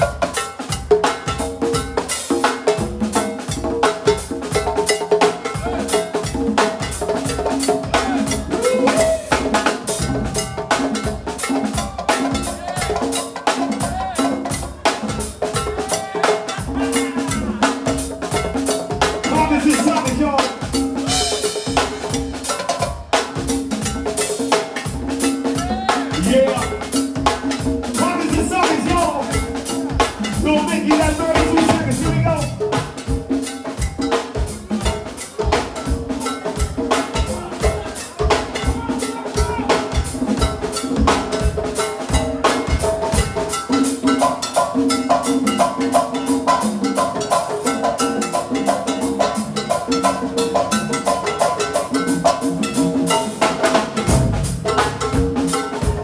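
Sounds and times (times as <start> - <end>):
drum kit and percussion groove: 0.0 - 56.0.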